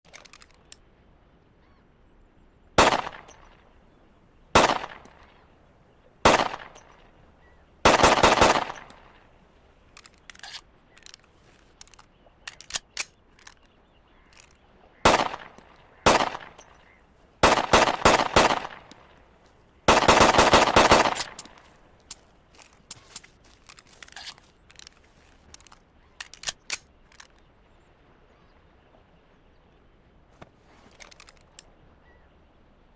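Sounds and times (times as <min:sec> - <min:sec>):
faint clicks: 0:00.0 - 0:00.9, 0:08.6 - 0:17.0, 0:21.0 - 0:27.5, 0:30.4 - 0:31.8
pistol gunshots: 0:02.8 - 0:03.4, 0:04.6 - 0:05.1, 0:06.2 - 0:06.8, 0:07.8 - 0:09.0, 0:15.0 - 0:16.6, 0:17.4 - 0:19.0, 0:19.9 - 0:21.6.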